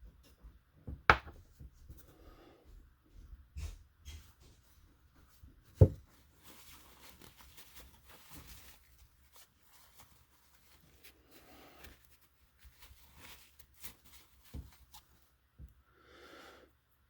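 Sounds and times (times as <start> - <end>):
soft rustling: 4.2 - 15.8.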